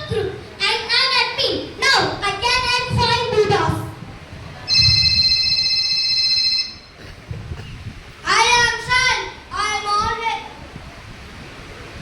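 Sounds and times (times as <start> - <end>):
child speaking: 0.0 - 4.0, 8.2 - 10.5
high-pitched electronic beep: 4.7 - 7.0.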